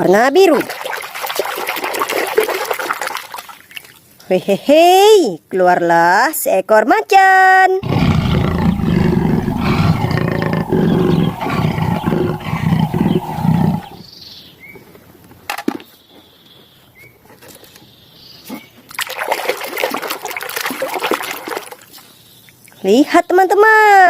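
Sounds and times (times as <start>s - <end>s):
big cat roaring: 7.8s - 14.0s
faint chirps: 7.9s - 14.0s.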